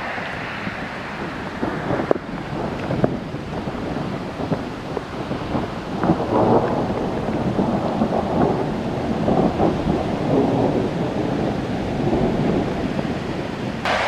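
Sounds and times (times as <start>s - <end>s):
heavy rain falling: 0.0s - 14.0s
thunder rumbling: 0.0s - 14.0s.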